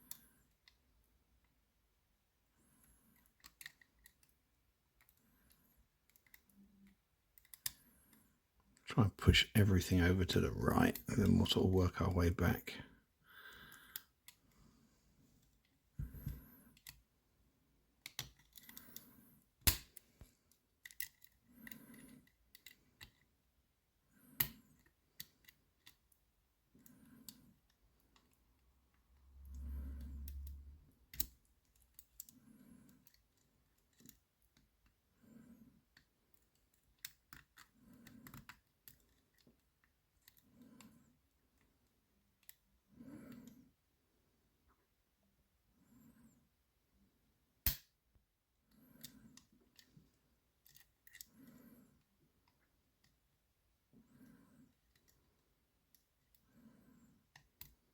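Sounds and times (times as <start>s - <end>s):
lock pick clicking and scraping: 3.1s - 4.4s, 6.0s - 7.8s, 18.0s - 23.3s, 30.2s - 35.0s, 35.8s - 40.9s, 50.6s - 51.6s.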